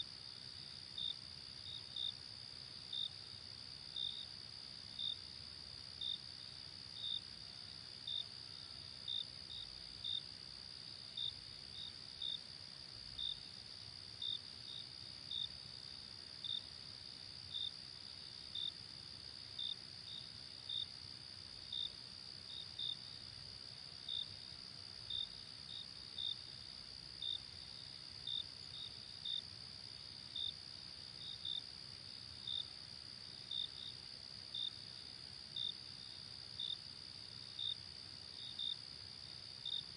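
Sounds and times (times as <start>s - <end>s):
continuous insect trill: 0.0s - 39.9s
crickets chirping: 0.0s - 39.9s.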